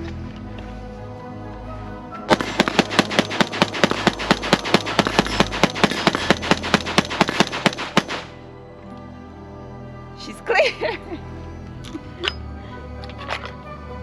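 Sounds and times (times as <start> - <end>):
rapid semi-automatic rifle fire: 2.3 - 8.3.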